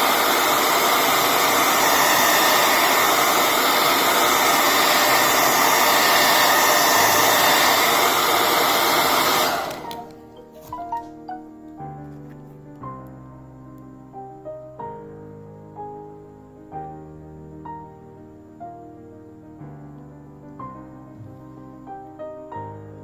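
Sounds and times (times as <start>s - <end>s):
hair dryer blowing: 0.0s - 10.2s
soft piano music: 9.8s - 23.0s.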